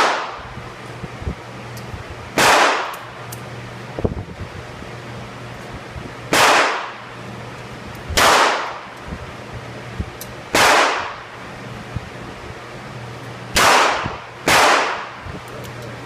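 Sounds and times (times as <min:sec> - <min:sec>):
loud gunshots with echo: 0:00.0 - 0:00.4, 0:02.4 - 0:02.9, 0:06.3 - 0:07.0, 0:08.2 - 0:08.8, 0:10.5 - 0:11.2, 0:13.6 - 0:15.2.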